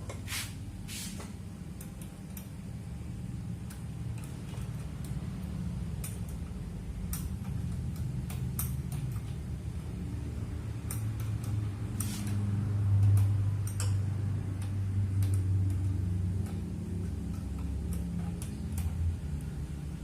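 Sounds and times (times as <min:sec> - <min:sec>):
steady low hum: 0:00.0 - 0:20.0
light clicks and taps: 0:10.8 - 0:19.5.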